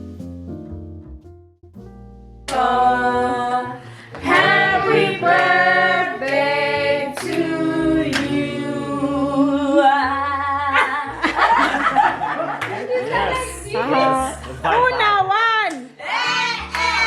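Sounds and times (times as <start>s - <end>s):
quiet music: 0.0s - 17.0s
voices singing together: 2.5s - 14.7s.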